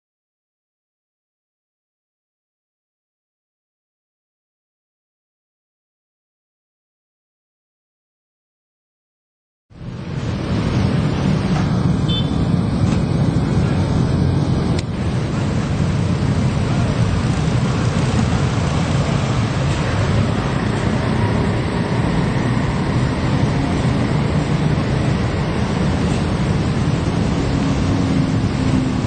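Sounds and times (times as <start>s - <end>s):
deep rumble of road traffic: 9.7s - 29.0s.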